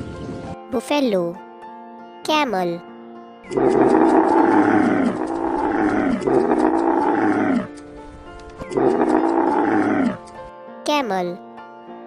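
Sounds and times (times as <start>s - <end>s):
light background music: 0.0s - 12.0s
camel bellowing: 3.5s - 7.8s, 8.6s - 10.4s.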